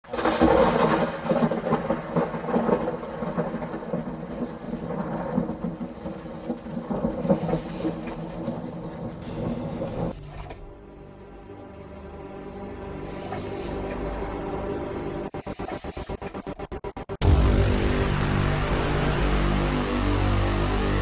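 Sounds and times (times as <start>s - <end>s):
thunder rumbling: 0.0s - 10.2s, 15.0s - 21.0s
steady low drone: 9.1s - 21.0s.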